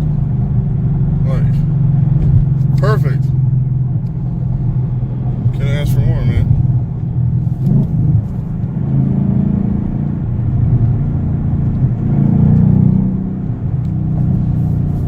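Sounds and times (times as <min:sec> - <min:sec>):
car engine running: 0:00.0 - 0:15.0.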